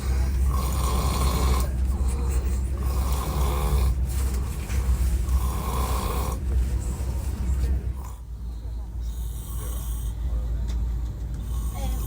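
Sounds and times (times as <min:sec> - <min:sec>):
moving train rumble: 0:00.0 - 0:12.0
person snoring loudly: 0:00.4 - 0:01.7.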